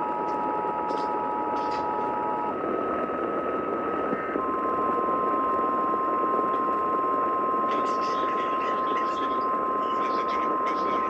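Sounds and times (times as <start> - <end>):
steady warning tone: 0.0 - 11.0
radio static: 0.1 - 11.0.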